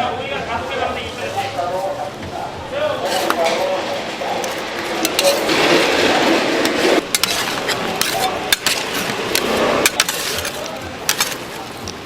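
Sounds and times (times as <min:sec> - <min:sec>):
steady background noise: 0:00.0 - 0:12.0
kitchen utensils knocking and clinking: 0:03.0 - 0:12.0.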